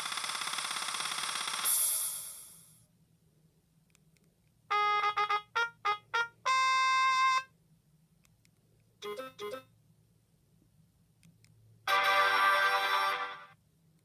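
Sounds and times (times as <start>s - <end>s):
synthesized phone jingle: 9.0s - 9.7s.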